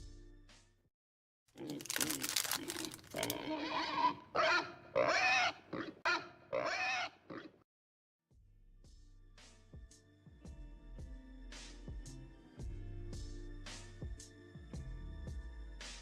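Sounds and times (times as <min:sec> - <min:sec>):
pig grunts and squeals: 0:01.5 - 0:07.6
crackling rustle: 0:01.6 - 0:03.4.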